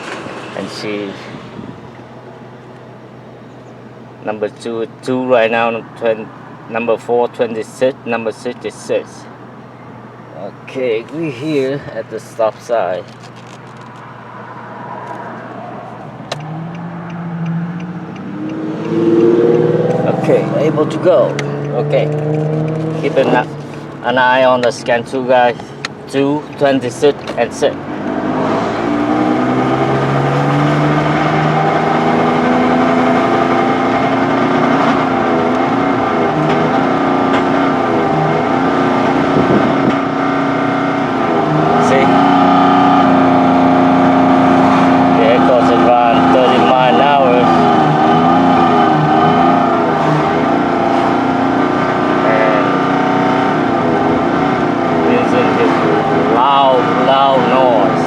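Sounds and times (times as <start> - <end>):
truck engine idling and pulling away: 13.6 - 58.0
sharp click: 16.2 - 17.2.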